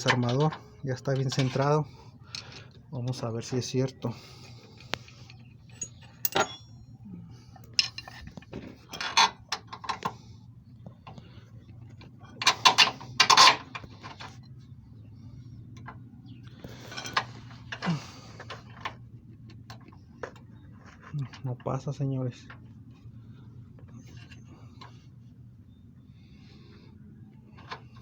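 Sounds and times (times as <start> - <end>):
low steady hum: 0.0 - 28.0
metal clinks and knocks of tools: 5.0 - 6.8, 7.6 - 10.0.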